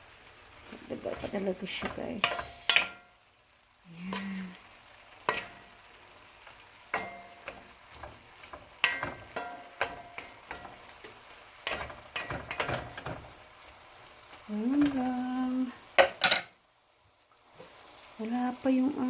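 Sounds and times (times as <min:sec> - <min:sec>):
beans sizzling in a pan: 0:00.0 - 0:19.0
utensil scraping a pan: 0:00.8 - 0:03.1, 0:06.9 - 0:13.4.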